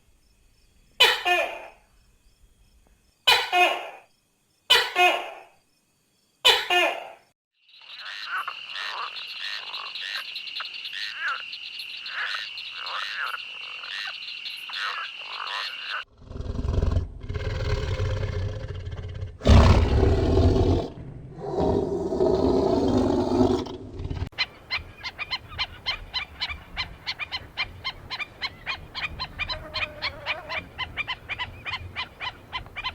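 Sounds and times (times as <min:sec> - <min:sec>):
frogs croaking: 0:07.1 - 0:16.8, 0:17.6 - 0:32.9
animal growling roar: 0:16.1 - 0:24.3.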